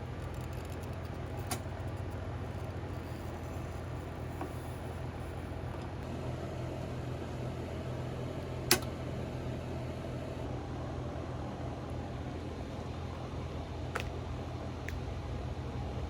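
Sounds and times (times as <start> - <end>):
low electrical hum: 0.0 - 16.0
sharp click: 8.7 - 8.9.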